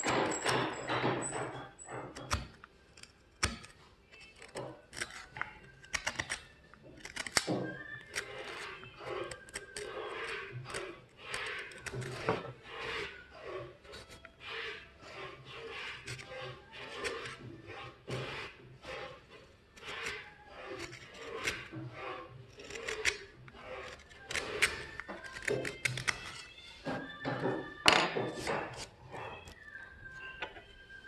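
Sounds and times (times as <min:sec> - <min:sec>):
blade scraping on buffing wheel: 0:08.0 - 0:26.0.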